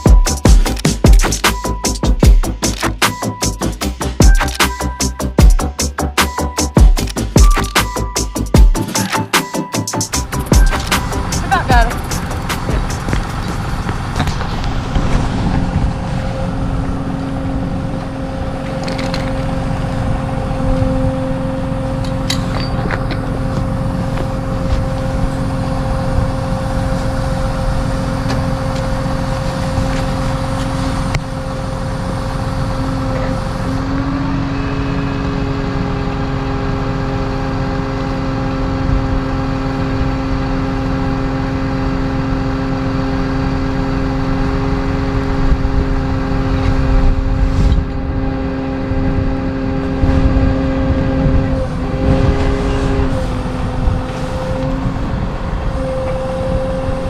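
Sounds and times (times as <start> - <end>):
vehicle engine running: 0.0 - 57.0.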